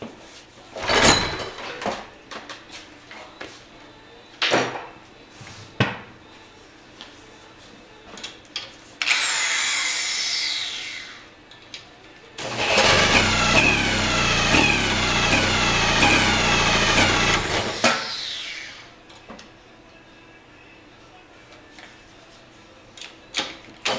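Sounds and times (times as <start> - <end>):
outboard motor cranking: 12.4 - 17.8.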